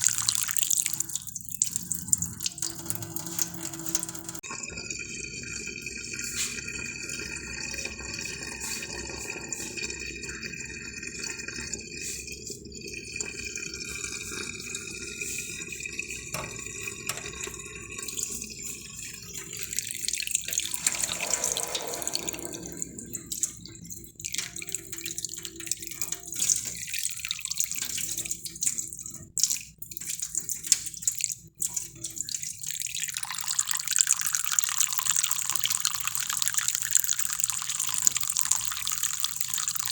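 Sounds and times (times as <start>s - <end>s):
water running and splashing: 0.0s - 4.4s, 32.8s - 39.9s
water drips: 0.0s - 39.9s.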